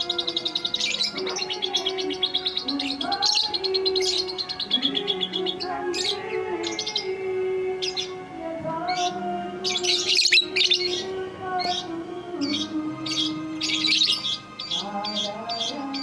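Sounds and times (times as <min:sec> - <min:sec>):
bird chattering trill: 0:00.0 - 0:07.2, 0:08.9 - 0:16.0
sharp bird chirps: 0:00.0 - 0:07.2, 0:08.9 - 0:16.0.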